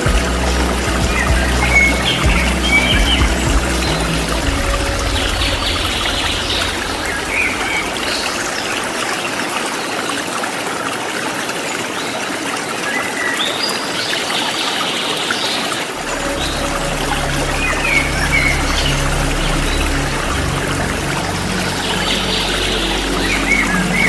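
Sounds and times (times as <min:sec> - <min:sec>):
birds chirping: 0:00.0 - 0:09.5
waterfall rushing: 0:00.0 - 0:24.0.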